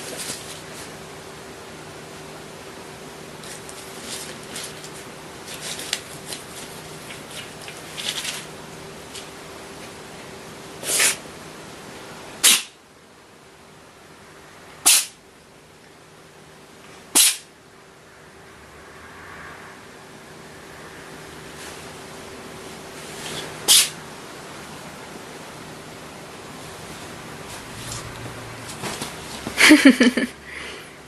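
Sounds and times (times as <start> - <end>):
steady hum: 0.0 - 31.0
short sharp bangs: 12.4 - 12.8, 14.9 - 15.2, 17.2 - 17.5.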